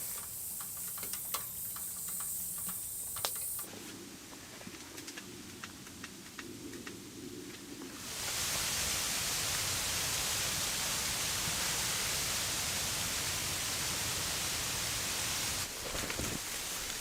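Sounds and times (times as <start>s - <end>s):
snowstorm wind hissing: 2.8s - 17.0s.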